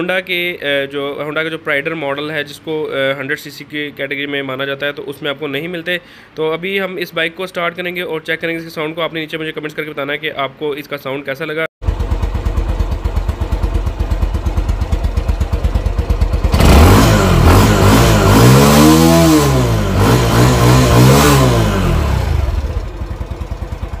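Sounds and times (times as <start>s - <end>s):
motorcycle engine idling and revving: 11.8s - 24.0s.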